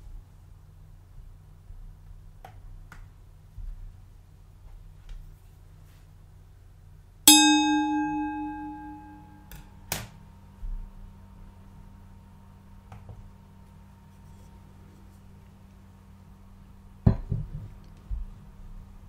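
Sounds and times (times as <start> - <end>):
object struck ringing bell-like: 7.3 - 9.8
knock: 17.0 - 17.7.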